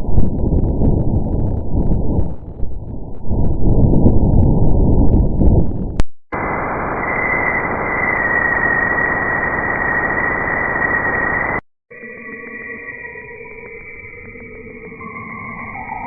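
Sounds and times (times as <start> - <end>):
low crackling noise: 0.0 - 11.6
static hiss: 6.4 - 11.6
eerie tones: 6.4 - 16.0
steady high whistle: 6.4 - 16.0.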